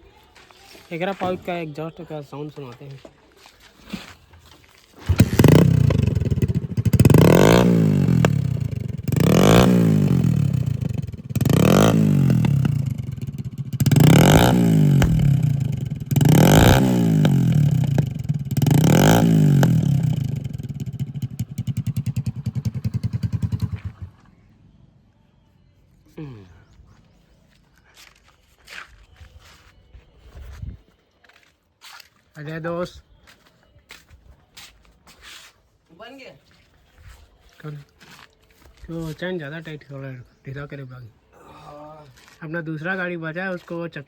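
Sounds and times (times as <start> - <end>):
motorcycle engine revving and idling: 5.0 - 24.8.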